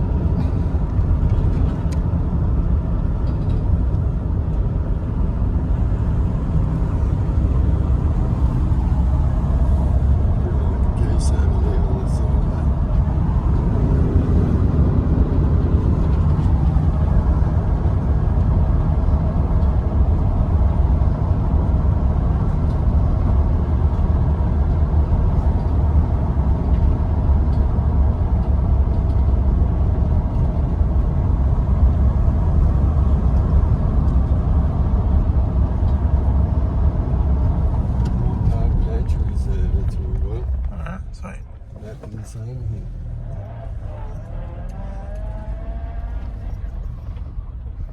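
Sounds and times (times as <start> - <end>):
car engine and tyre noise: 0.0 - 47.9.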